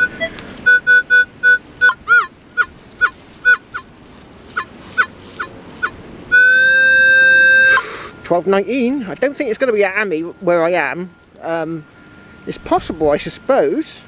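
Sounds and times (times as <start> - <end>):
metal detector beeping: 4.6 - 14.0
metal detector steady tone: 4.6 - 14.0.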